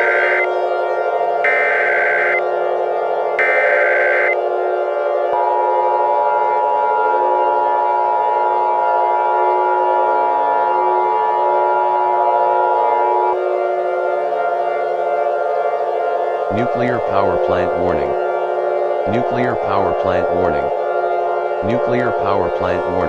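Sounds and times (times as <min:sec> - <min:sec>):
higher steady tone: 0:00.0 - 0:02.6, 0:03.4 - 0:04.5, 0:16.5 - 0:18.4, 0:19.1 - 0:23.0
warning siren tones: 0:00.0 - 0:23.0.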